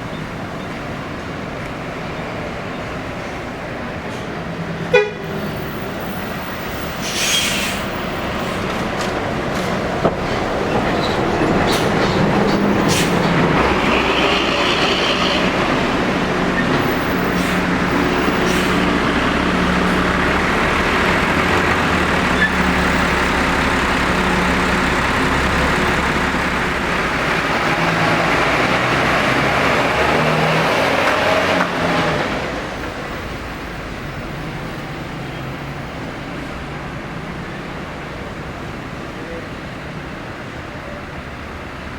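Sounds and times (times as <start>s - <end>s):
bus diesel engine running: 0.0s - 41.9s
traffic noise: 0.0s - 41.9s.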